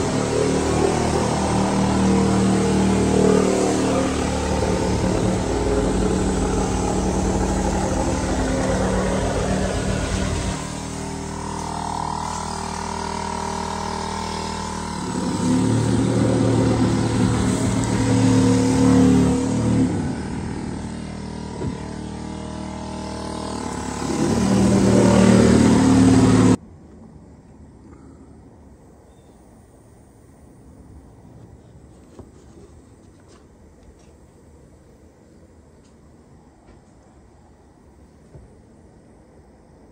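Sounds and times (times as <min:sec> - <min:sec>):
motor engine running: 0:00.0 - 0:26.6.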